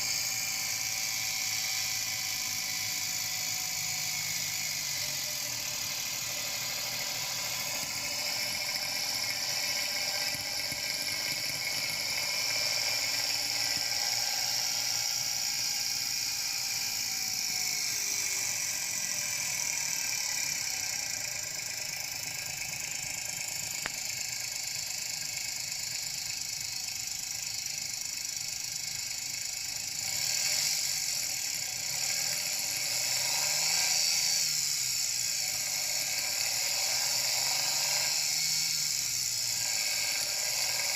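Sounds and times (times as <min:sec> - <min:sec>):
car engine running: 0:00.0 - 0:33.7
high-pitched tinkling engine knock: 0:00.0 - 0:40.9.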